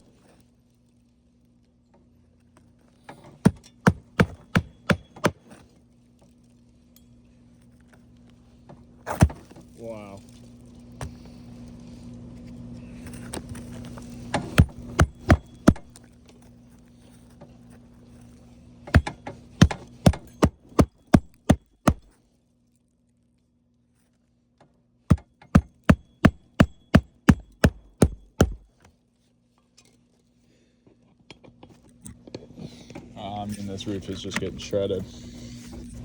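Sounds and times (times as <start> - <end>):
hammer driving nails into shingles: 3.4 - 5.6, 9.1 - 9.5, 14.4 - 16.0, 18.9 - 22.1, 25.1 - 28.9.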